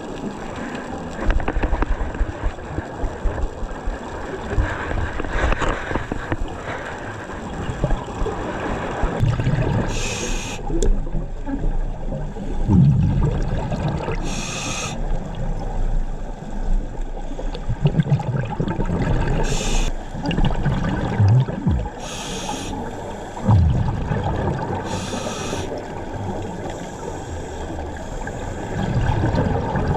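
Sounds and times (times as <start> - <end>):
gurgling exhaled bubbles: 7.5 - 15.7, 17.5 - 22.7, 23.4 - 26.5, 28.2 - 29.9
hissing regulator inhalations: 9.9 - 10.7, 14.2 - 15.0, 19.4 - 19.9, 21.7 - 23.5, 24.8 - 25.8.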